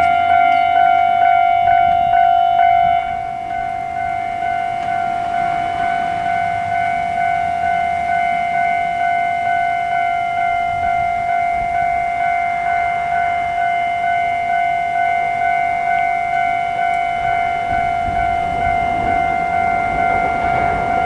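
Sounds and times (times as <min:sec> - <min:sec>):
level crossing bell ringing: 0:00.0 - 0:21.0
train rumble: 0:00.0 - 0:21.0.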